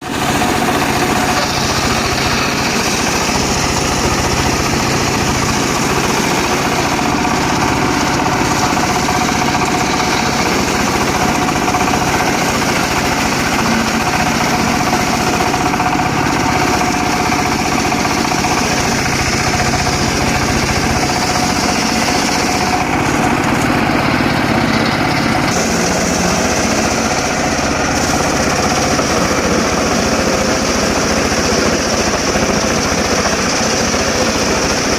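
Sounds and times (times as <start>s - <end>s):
circular sawmill sawing wood: 0.0s - 34.9s.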